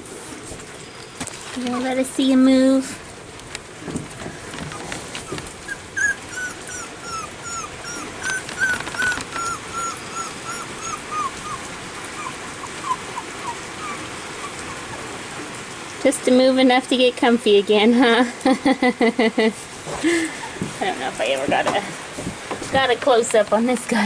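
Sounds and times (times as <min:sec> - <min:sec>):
puppy whimpering: 0:04.6 - 0:15.5.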